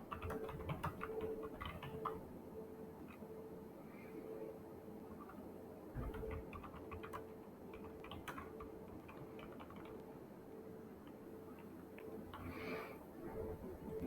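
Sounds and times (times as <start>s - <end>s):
computer keyboard typing: 0.0s - 2.3s, 5.1s - 10.2s, 11.0s - 12.8s.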